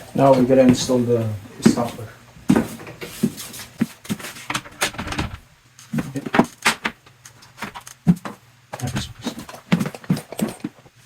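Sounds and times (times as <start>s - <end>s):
wooden moulding knocking and clattering: 4.4s - 5.5s.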